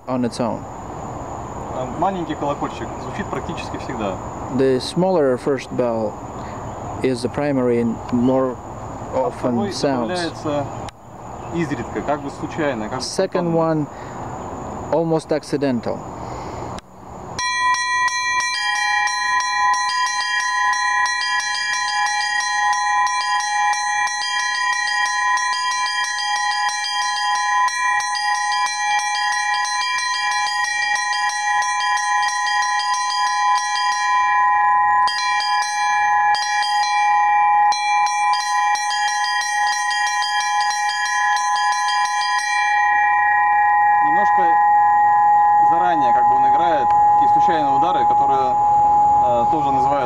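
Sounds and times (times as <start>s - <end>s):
small bell struck rapidly: 17.4s - 47.8s
lower-pitched bell stroke: 17.4s - 50.0s.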